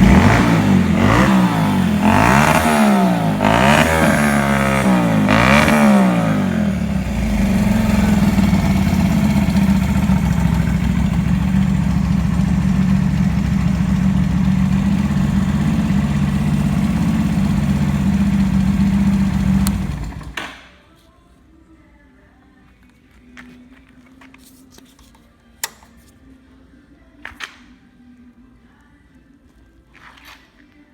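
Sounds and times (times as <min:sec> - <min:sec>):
motorcycle engine revving and idling: 0:00.0 - 0:20.4.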